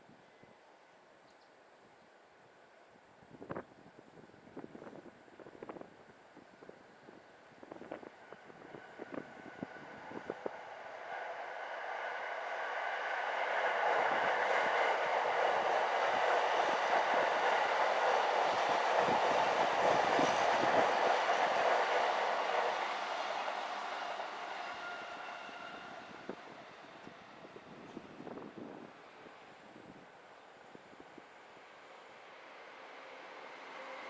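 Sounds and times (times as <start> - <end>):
train running past: 4.6 - 34.0
train clicks: 13.4 - 24.5.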